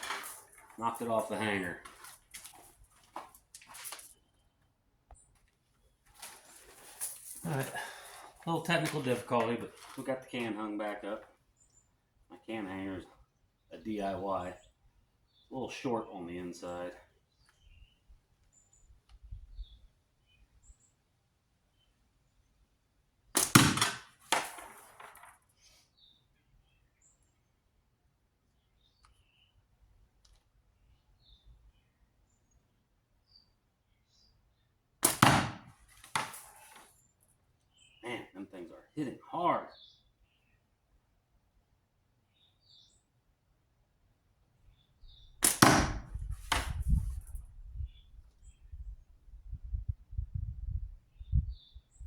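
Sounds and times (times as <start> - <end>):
slingshot snap and smack: 23.4 - 25.2, 35.0 - 36.8, 45.4 - 47.1.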